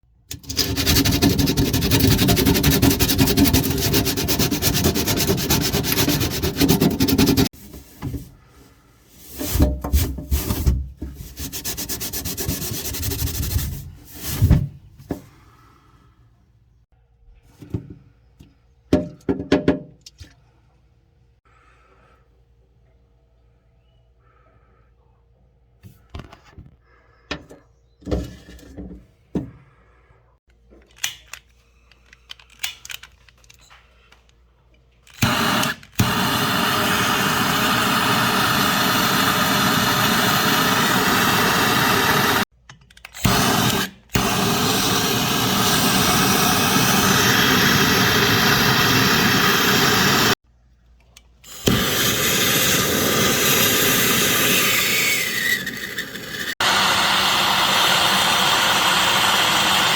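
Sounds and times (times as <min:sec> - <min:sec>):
loud rushing hiss: 0:43.3 - 0:50.4, 0:51.5 - 0:59.9.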